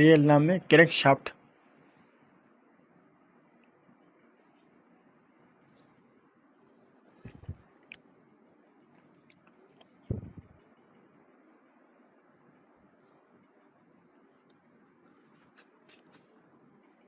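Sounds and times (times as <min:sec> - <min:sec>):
cricket trill: 0:00.0 - 0:17.0.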